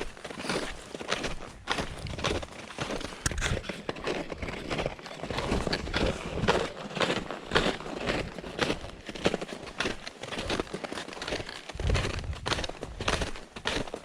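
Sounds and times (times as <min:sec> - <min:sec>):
footsteps crunching on rocky trail: 0:00.0 - 0:14.0
camera handling rustle and knocks: 0:03.1 - 0:03.6.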